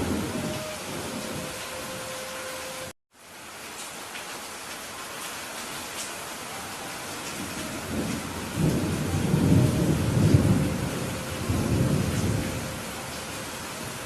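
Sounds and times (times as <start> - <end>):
thunder rumbling: 0.0 - 2.9, 7.2 - 14.0
heavy rain hiss: 0.0 - 14.0.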